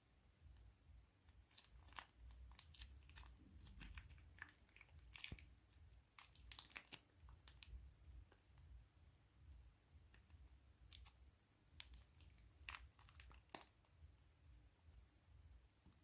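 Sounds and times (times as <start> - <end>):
thin plastic crinkling: 1.3 - 8.5, 10.1 - 14.2.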